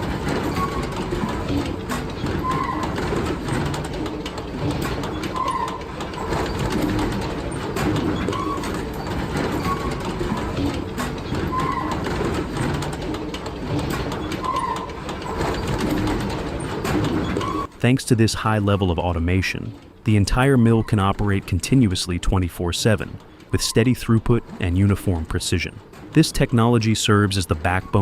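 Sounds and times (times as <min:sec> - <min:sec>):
clanks and knocks: 0:00.0 - 0:17.8, 0:24.4 - 0:26.2
machinery din: 0:00.0 - 0:28.0.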